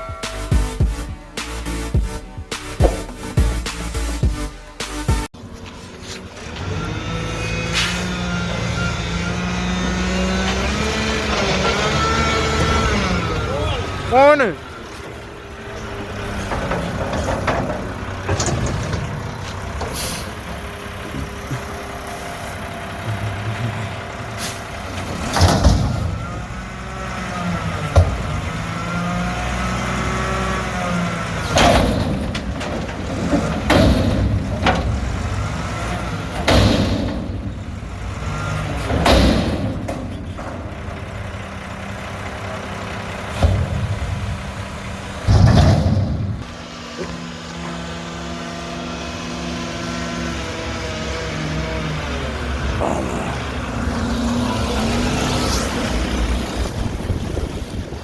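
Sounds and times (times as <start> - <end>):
garbage truck diesel engine running: 0.0 - 58.0
metal clanks: 14.9 - 47.8.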